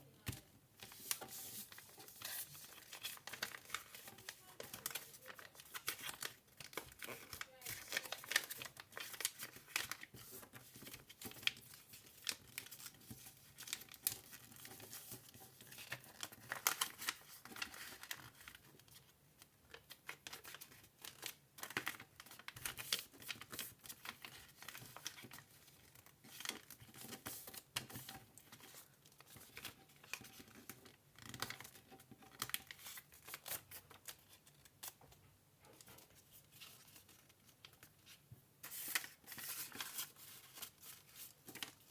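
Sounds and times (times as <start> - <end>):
paper crinkling and rustling: 0.2 - 41.9
paper crackling as folded: 0.3 - 35.1, 35.7 - 41.9.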